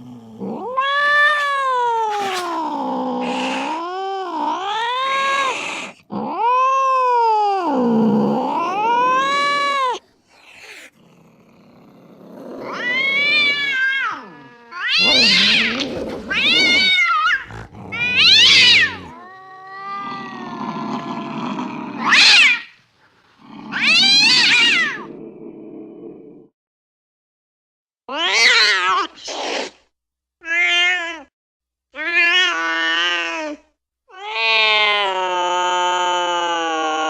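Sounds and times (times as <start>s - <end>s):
cat yowling: 0.6s - 10.9s, 12.6s - 21.4s, 22.0s - 22.8s, 23.7s - 25.1s, 28.1s - 29.1s.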